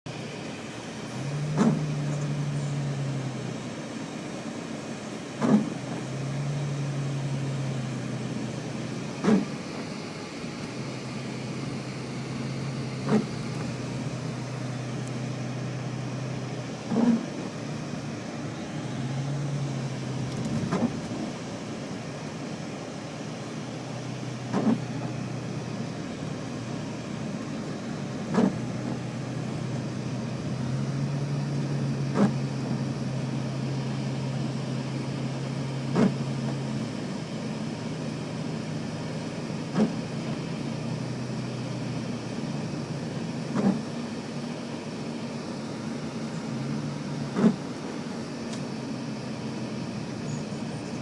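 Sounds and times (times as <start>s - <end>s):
motor vehicle running: 0.1s - 51.0s.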